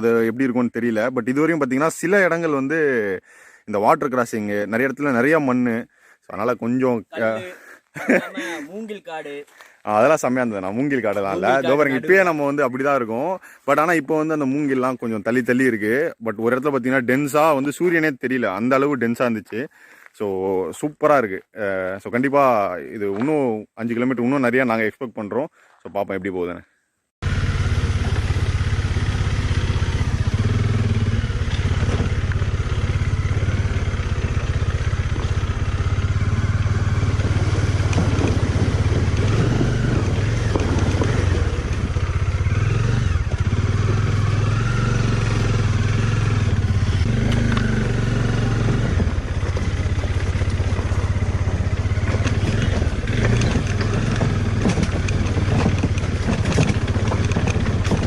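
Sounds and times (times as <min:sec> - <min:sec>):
motorcycle engine running: 0:27.2 - 0:58.0
bike rattling and clattering: 0:27.5 - 0:58.0.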